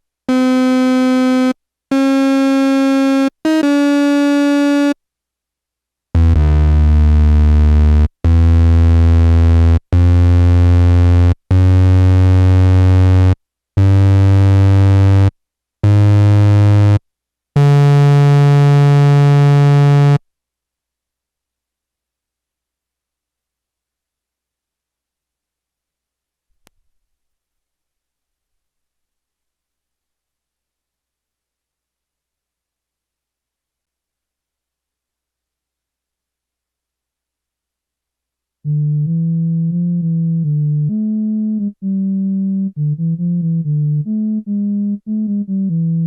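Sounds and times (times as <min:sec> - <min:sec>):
analog synthesizer notes: 0:00.3 - 0:05.0, 0:06.2 - 0:17.0, 0:38.7 - 0:46.0.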